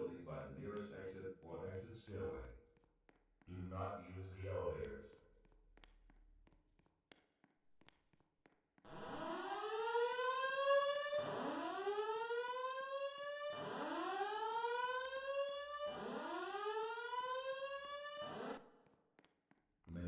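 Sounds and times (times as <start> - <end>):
rising sweep alarm tone: 8.9 - 18.6.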